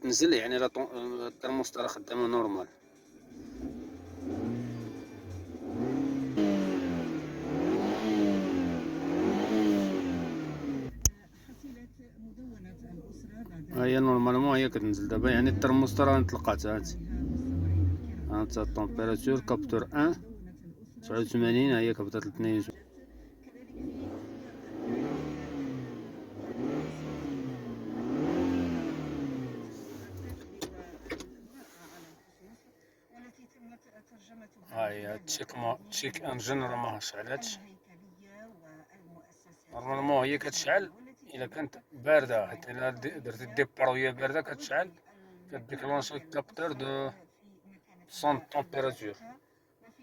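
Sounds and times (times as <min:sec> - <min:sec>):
car engine revving: 0:03.3 - 0:20.8, 0:21.5 - 0:32.0.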